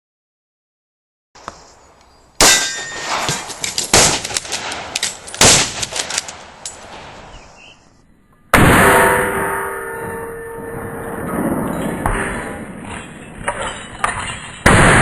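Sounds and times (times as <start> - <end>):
steel targets clanging: 2.4 - 4.3
rifle shots: 2.4 - 7.2, 14.6 - 15.0.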